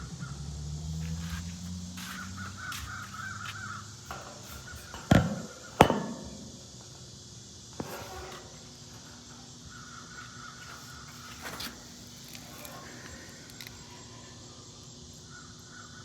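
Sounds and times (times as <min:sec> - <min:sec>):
crow cawing: 0:02.0 - 0:04.0, 0:09.7 - 0:11.1.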